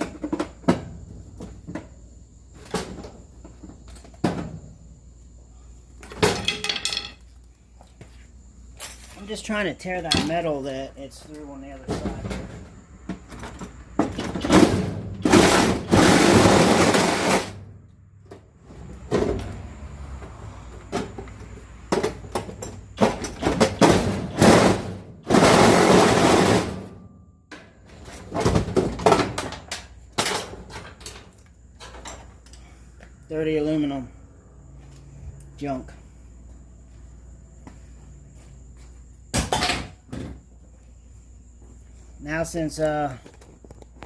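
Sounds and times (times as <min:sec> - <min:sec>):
metal clanks and knocks: 0:06.0 - 0:07.3, 0:10.0 - 0:10.5, 0:20.9 - 0:32.5.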